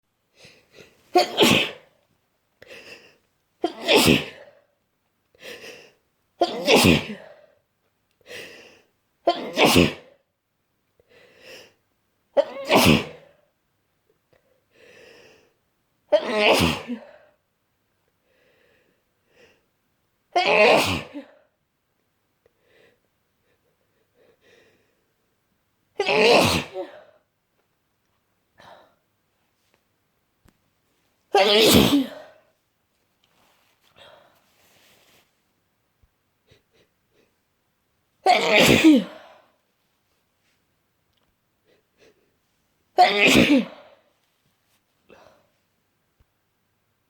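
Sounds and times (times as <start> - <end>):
person sneezing loudly: 1.1 - 1.9, 3.6 - 4.6, 6.4 - 7.5, 9.3 - 10.2, 12.4 - 13.4, 16.1 - 17.3, 20.4 - 21.4, 26.0 - 27.2, 31.3 - 32.4, 38.2 - 39.4, 43.0 - 44.0
quiet breaths: 10.9 - 11.9, 14.1 - 15.8, 18.1 - 19.9, 22.4 - 25.4, 32.3 - 37.8, 39.1 - 42.9.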